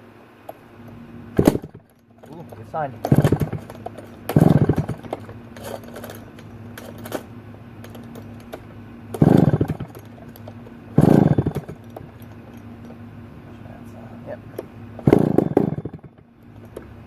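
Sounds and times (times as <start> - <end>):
chainsaw engine firing briefly: 3.1 - 3.7, 4.3 - 5.0, 9.2 - 10.0, 11.0 - 11.8, 15.0 - 16.0.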